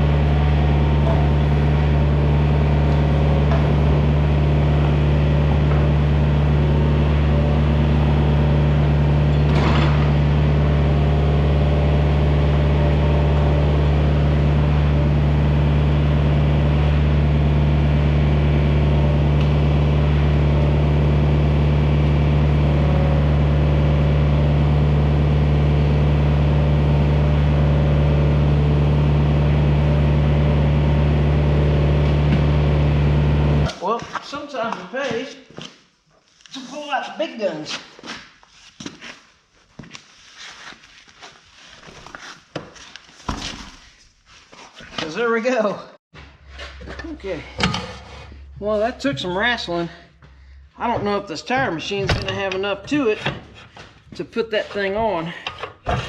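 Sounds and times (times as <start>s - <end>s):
excavator diesel engine running: 0.0s - 33.7s.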